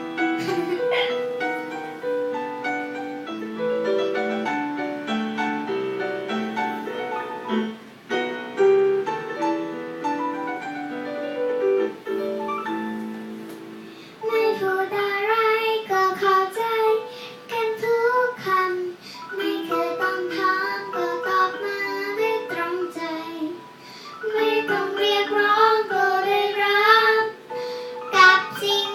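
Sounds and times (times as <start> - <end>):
piano accompaniment: 0.0 - 28.9
girl singing a pop ballad: 14.2 - 28.9.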